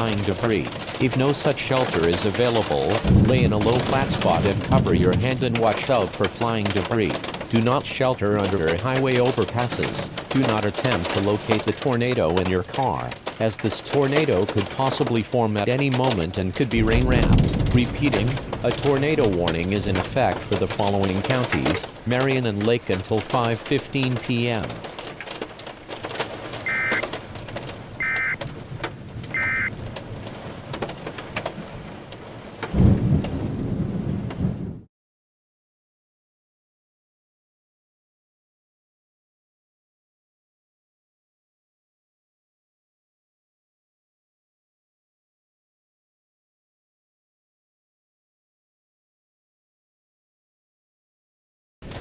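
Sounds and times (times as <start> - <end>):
steady rain: 0.0 - 34.9
thunder crackling and rumbling: 0.0 - 34.9
digital data bursts: 26.7 - 27.0, 28.0 - 28.4, 29.4 - 29.7.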